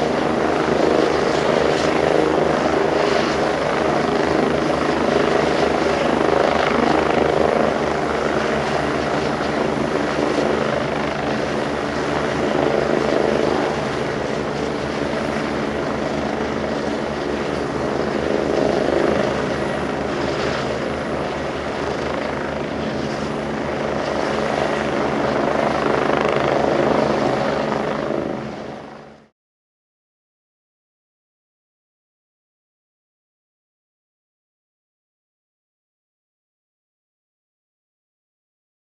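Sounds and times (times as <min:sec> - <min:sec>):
helicopter engine whine: 0:00.0 - 0:29.3
helicopter rotor beat: 0:00.0 - 0:29.3.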